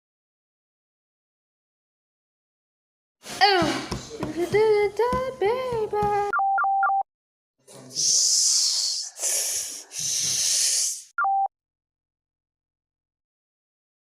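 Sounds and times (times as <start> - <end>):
loud hissing noise: 8.0 - 11.1.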